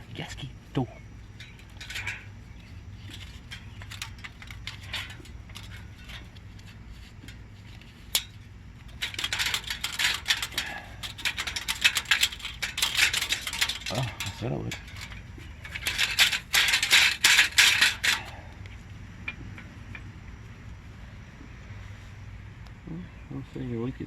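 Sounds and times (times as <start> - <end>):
metallic clicks and rattles of tools: 1.4 - 20.1.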